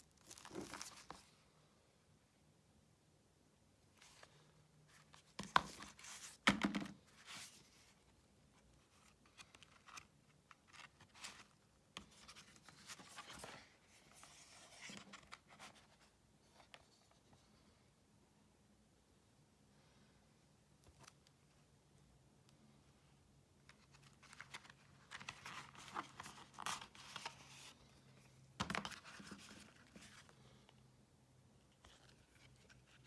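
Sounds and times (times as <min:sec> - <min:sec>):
packaging scraping and rustling: 0:00.2 - 0:01.2.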